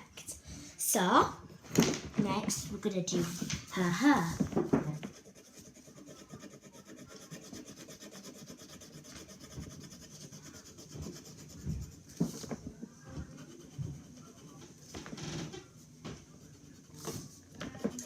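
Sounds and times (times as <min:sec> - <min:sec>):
pencil scribbling on paper: 0:02.7 - 0:14.8, 0:16.2 - 0:18.0.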